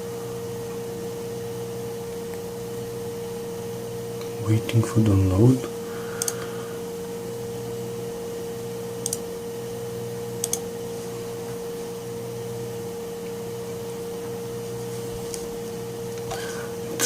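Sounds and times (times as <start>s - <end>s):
steady electrical hum: 0.0s - 17.0s
computer mouse clicking: 6.2s - 6.4s, 9.0s - 9.3s, 10.4s - 10.7s.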